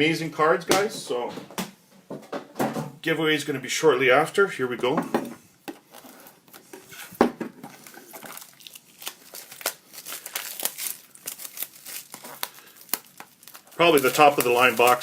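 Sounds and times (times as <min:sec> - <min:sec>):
packaging crinkling and tearing: 0:05.8 - 0:15.0.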